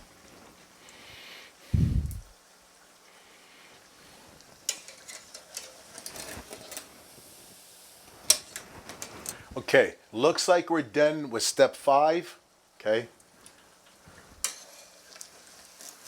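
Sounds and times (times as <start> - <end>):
dough sizzling in oil: 0.0 - 10.7, 12.4 - 16.0
utensil clicking on frying pan: 4.6 - 6.8, 8.3 - 9.1, 14.4 - 16.0.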